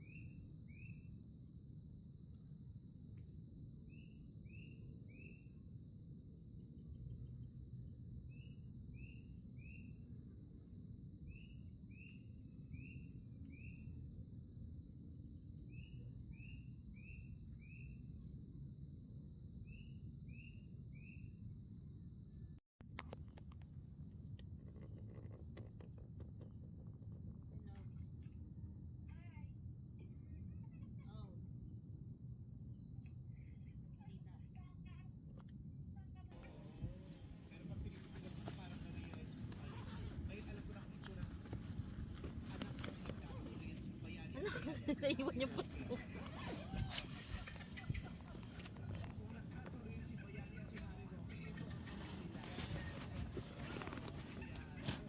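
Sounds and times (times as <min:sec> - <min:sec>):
crickets and insects chirring: 0:00.0 - 0:36.3, 0:51.4 - 0:55.0.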